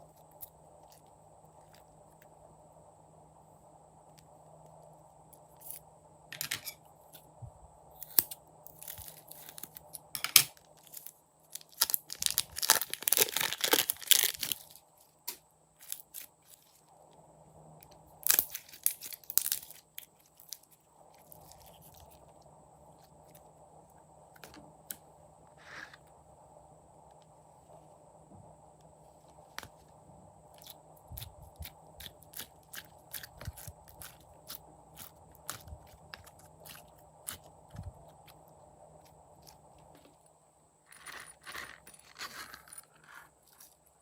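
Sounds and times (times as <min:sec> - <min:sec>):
slime crackling and popping: 0:11.6 - 0:14.6.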